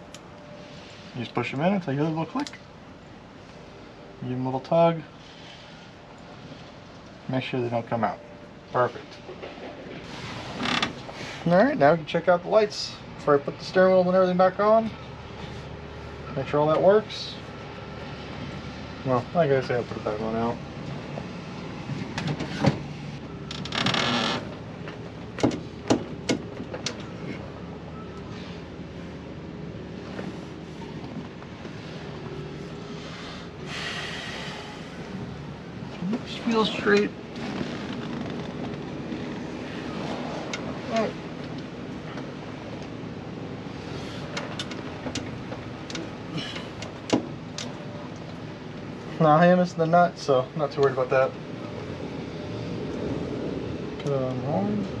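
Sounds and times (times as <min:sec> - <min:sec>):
steady low hum: 0:00.0 - 0:55.0
scraping rustle: 0:09.3 - 0:11.5, 0:35.9 - 0:41.2
sharp clicks and knocks: 0:24.8 - 0:27.1, 0:44.3 - 0:46.1.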